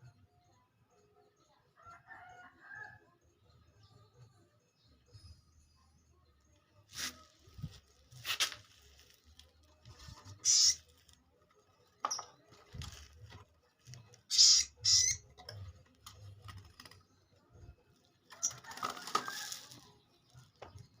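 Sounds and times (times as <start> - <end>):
bird chirping: 9.7 - 12.8, 13.9 - 16.4.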